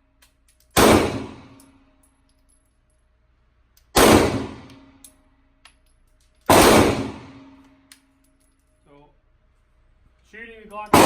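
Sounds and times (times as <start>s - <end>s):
pistol shots echoing: 0.8s - 1.6s, 4.0s - 5.0s, 6.5s - 7.6s.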